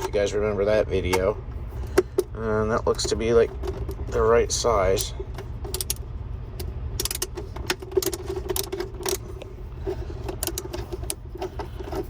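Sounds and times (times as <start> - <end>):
steady low hum: 0.0 - 12.0
hand tools clicking and clinking: 7.0 - 12.0.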